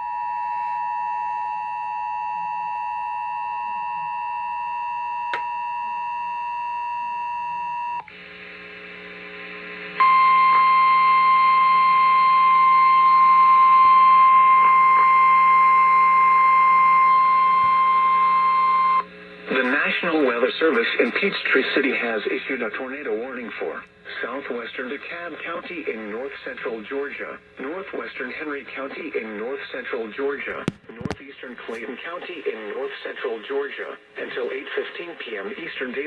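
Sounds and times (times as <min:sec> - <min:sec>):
steady warning alarm tone: 0:00.0 - 0:08.0, 0:10.0 - 0:21.2.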